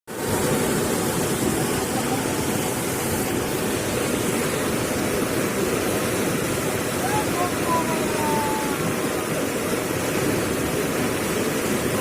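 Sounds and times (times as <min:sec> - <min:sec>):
floodwater rushing: 0:00.1 - 0:12.0.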